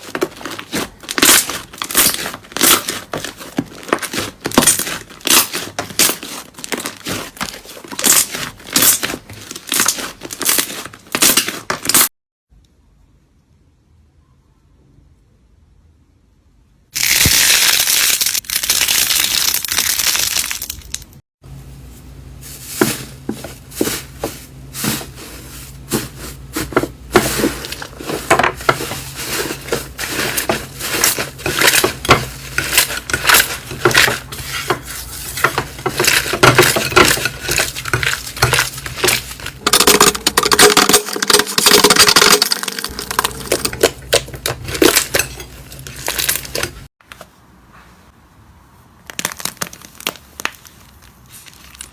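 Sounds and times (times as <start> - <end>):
slime squeezed crackling and popping: 49.1 - 51.9.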